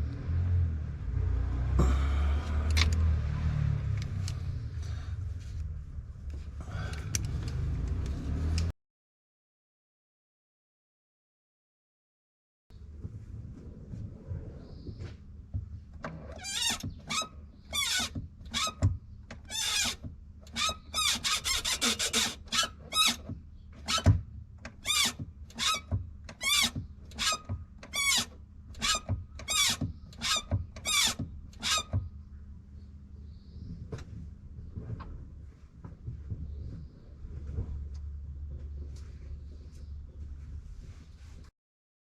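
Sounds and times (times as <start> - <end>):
clutch squeaking: 15.9 - 32.4.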